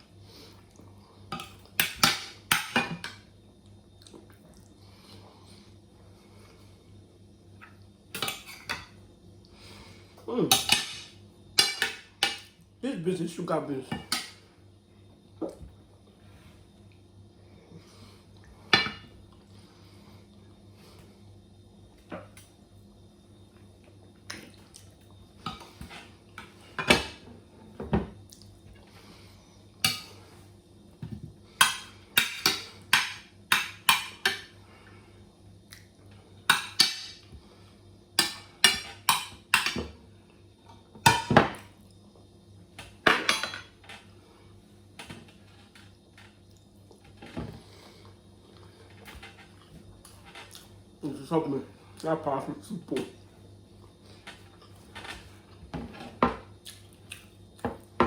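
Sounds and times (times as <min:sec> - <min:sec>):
cutlery clinking and scraping on plate: 0:10.5 - 0:12.5.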